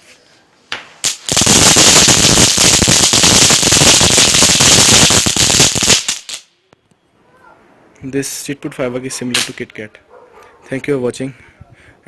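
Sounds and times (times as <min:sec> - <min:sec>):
firecracker crackling pops: 0:00.7 - 0:06.5, 0:09.3 - 0:09.8.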